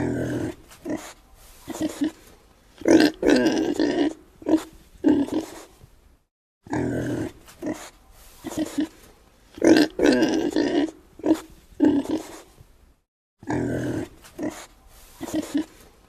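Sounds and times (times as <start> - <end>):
pig grunting: 0.0 - 2.2, 2.8 - 5.7, 6.7 - 9.0, 9.6 - 12.5, 13.4 - 15.8.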